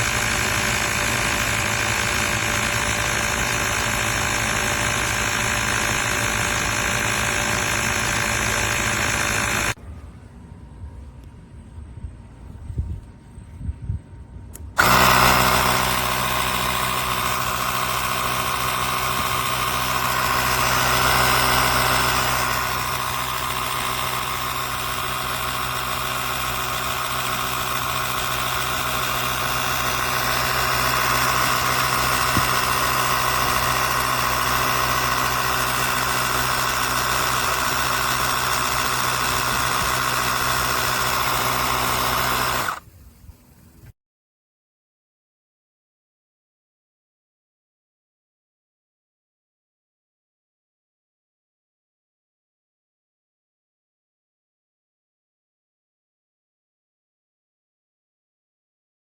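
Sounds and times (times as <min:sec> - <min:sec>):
small electric air compressor running: 0:00.0 - 0:09.8, 0:14.5 - 0:43.9.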